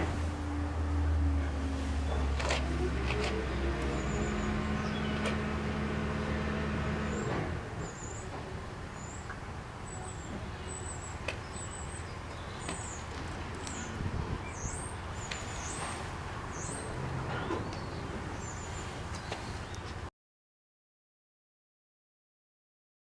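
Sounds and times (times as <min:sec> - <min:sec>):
small birds chirping: 0:02.8 - 0:05.6, 0:07.0 - 0:20.1.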